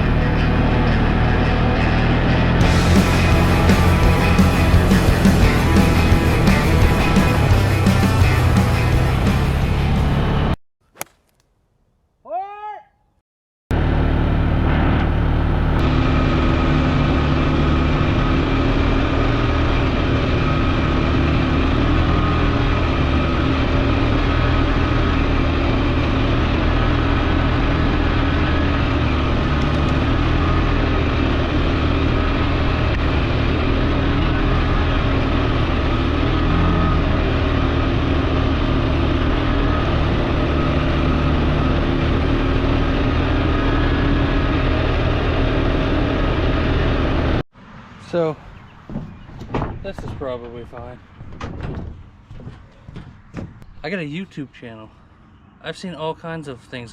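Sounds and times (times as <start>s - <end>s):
atv engine running: 0.0s - 11.1s, 13.7s - 47.9s.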